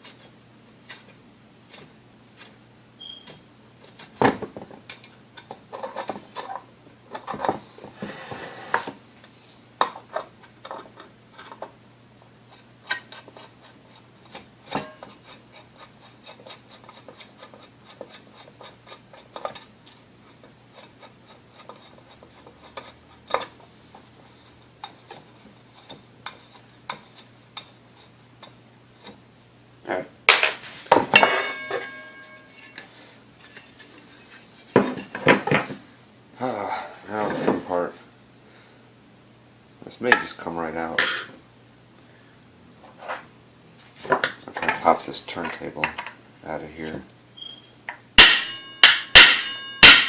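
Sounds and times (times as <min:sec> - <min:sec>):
scraping on metal: 0:07.2 - 0:09.0, 0:31.5 - 0:35.1.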